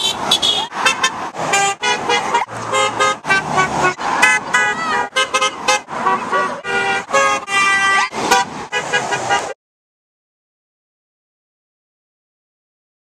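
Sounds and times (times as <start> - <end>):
car horns honking: 0.0 - 9.6.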